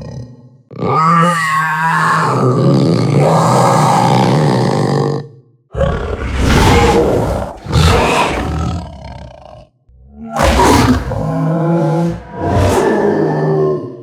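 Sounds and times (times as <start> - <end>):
panther roaring: 5.7 - 14.0.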